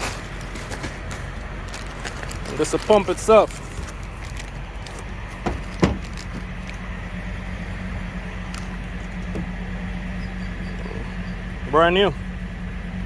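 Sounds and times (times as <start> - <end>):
truck refrigeration unit droning: 0.0 - 13.0
sharp knocks: 5.4 - 6.2.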